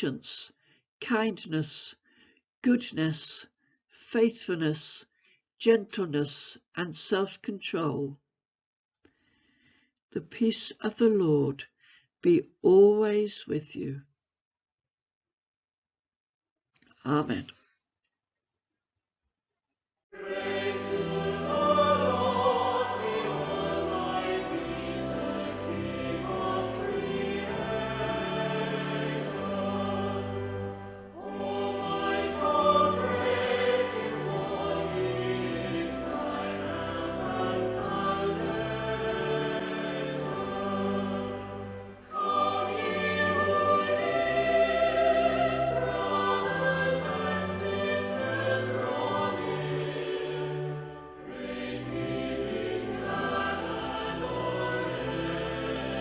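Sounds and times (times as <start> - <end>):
choir singing sacred music: 20.2 - 56.0
instrumental accompaniment: 20.2 - 56.0.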